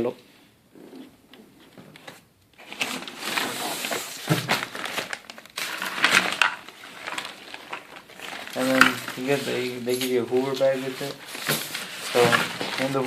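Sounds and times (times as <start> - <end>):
plastic packaging crinkling: 2.6 - 13.0.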